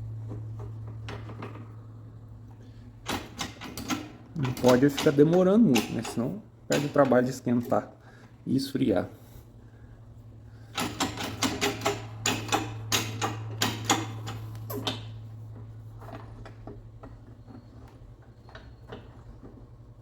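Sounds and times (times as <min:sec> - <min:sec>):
steady low hum: 0:00.0 - 0:20.0
sharp metallic clicks and knocks: 0:03.0 - 0:07.4, 0:10.7 - 0:15.2.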